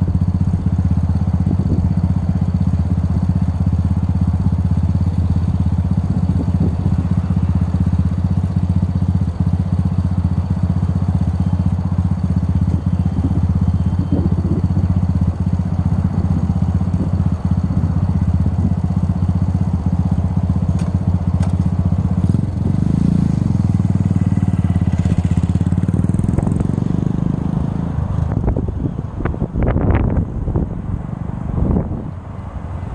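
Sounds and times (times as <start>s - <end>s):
motorcycle engine running: 0.0s - 32.9s
wind rushing: 28.3s - 32.2s.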